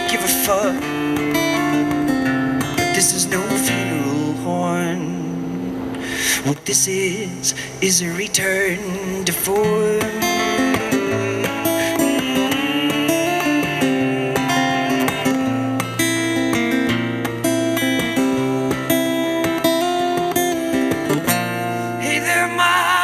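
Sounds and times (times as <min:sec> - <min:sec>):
acoustic guitar strumming chords: 0:00.0 - 0:23.0
person singing: 0:06.4 - 0:15.4, 0:21.8 - 0:23.0.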